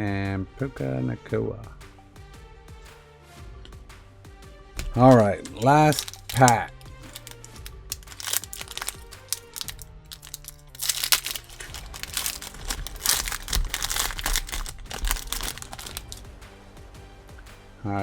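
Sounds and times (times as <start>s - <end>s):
background music: 0.0s - 18.0s
wrapper torn open and crinkled: 4.8s - 16.2s.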